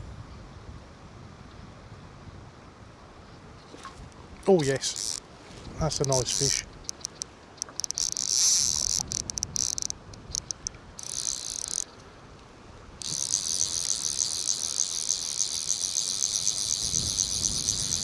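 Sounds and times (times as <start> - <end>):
fly reel clicking rapidly: 4.6 - 5.2, 5.9 - 11.9, 13.0 - 18.0.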